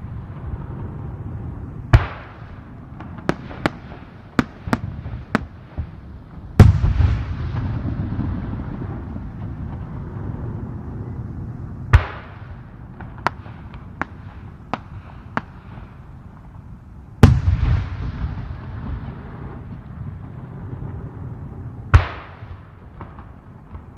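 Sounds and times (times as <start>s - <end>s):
fireworks booming: 0.0s - 23.9s
low rumble: 6.6s - 16.0s, 17.0s - 23.9s
fireworks sharp pops: 13.0s - 16.5s.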